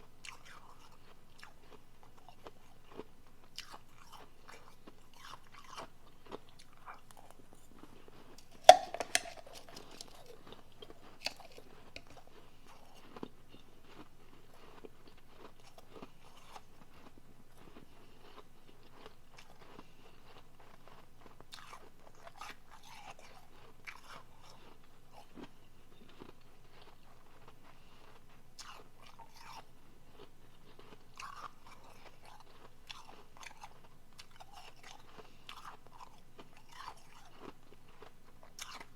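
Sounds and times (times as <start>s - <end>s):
chewing ice crunching: 0.0s - 38.9s
sharp bite into ice: 8.4s - 10.4s.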